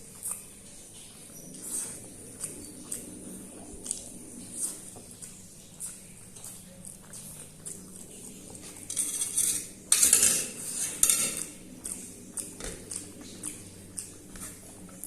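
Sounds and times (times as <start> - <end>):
cutlery scraping a dish: 8.8 - 11.6.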